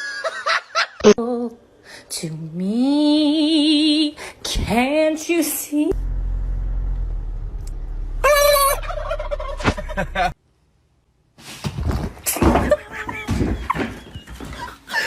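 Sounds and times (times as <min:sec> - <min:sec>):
steady low hum: 0:05.9 - 0:11.2
animal call with wavering pitch: 0:08.2 - 0:09.7.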